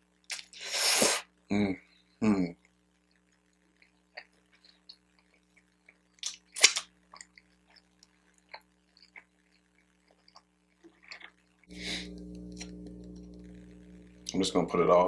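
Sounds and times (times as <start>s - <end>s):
faint steady hum: 0.0s - 15.0s
chewing and mouth clicks: 3.8s - 11.5s
loud bite crunch: 6.2s - 7.3s.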